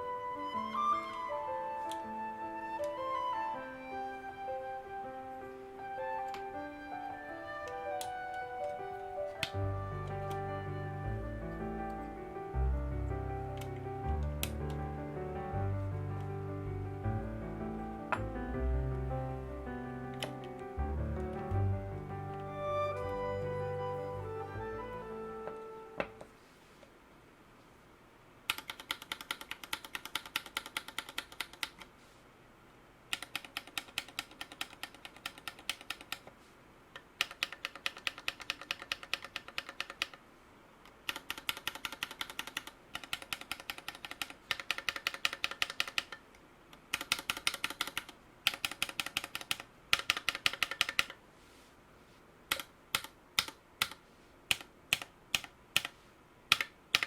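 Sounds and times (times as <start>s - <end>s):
mechanical keyboard key clacks: 28.5s - 31.9s, 33.1s - 36.3s, 37.0s - 40.2s, 41.1s - 46.2s, 46.8s - 51.2s, 52.5s - 55.9s, 56.5s - 57.0s.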